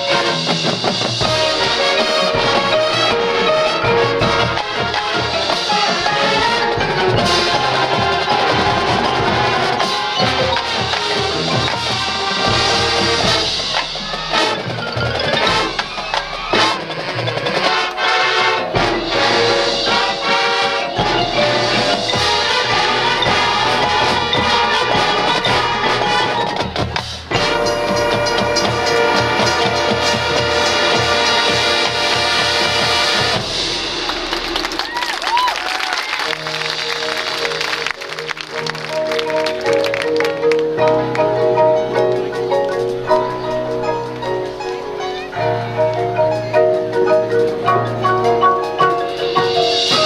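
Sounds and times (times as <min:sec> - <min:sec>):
marching band playing: 0:00.0 - 0:50.0
marching percussion: 0:00.0 - 0:50.0.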